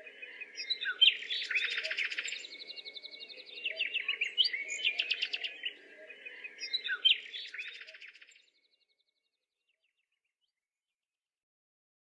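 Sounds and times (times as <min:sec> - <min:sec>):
birds twittering: 0:00.1 - 0:08.7.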